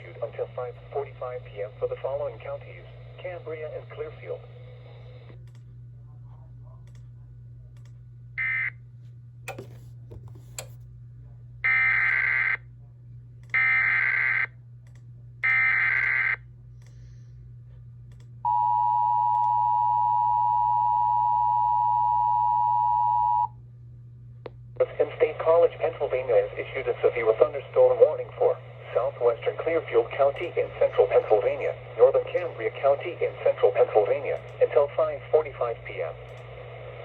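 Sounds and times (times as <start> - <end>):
low hum: 0.0 - 37.0.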